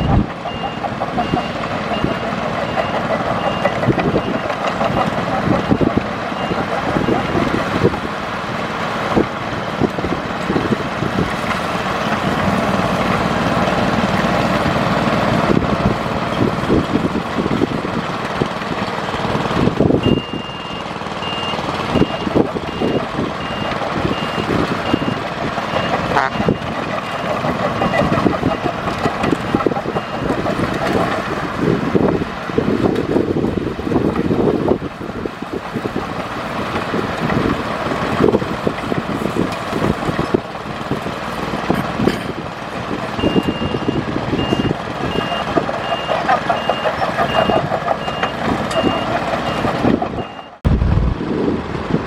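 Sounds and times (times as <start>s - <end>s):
reversing alarm beeping: 0.0s - 7.4s, 20.0s - 28.8s, 29.4s - 30.5s, 43.2s - 50.6s
heavy machinery running: 0.0s - 52.0s.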